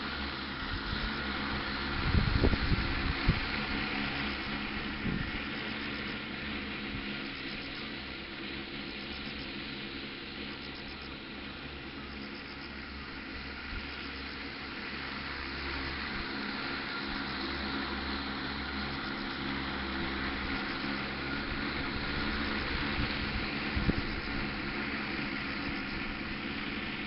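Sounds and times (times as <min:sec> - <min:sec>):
drone propeller hum: 0:00.0 - 0:27.0.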